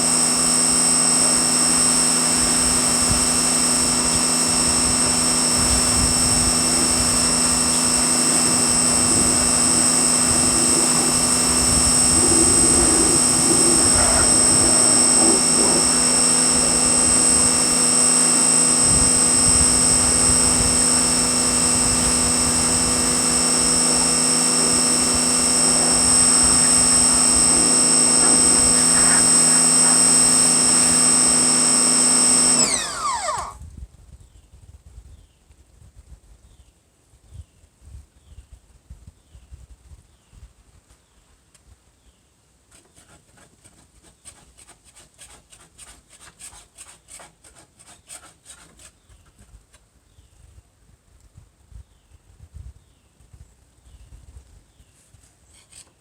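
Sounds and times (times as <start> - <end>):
pressure washer running: 0.0 - 33.6.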